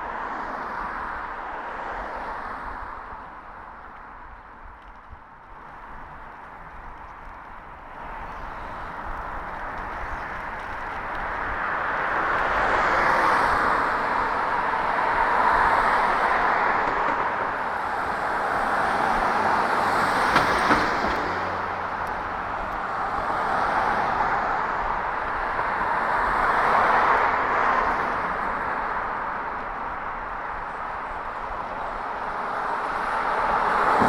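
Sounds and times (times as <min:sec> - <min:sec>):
cars passing: 0:05.3 - 0:34.0.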